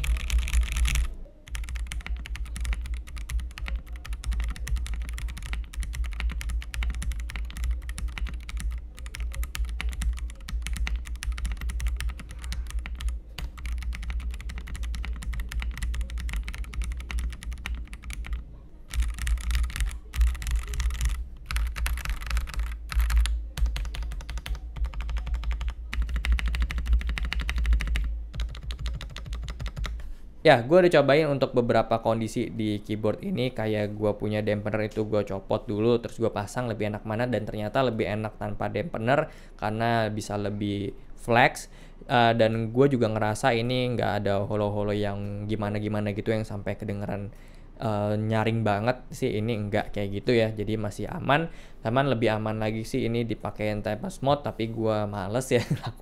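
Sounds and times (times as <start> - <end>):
fast typing on mechanical keyboard: 0.0 - 30.0.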